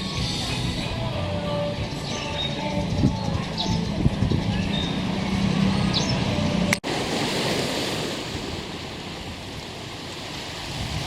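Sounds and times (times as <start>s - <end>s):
wind on microphone: 0.0s - 6.8s, 8.2s - 11.0s
ocean surf on a beach: 5.2s - 11.0s.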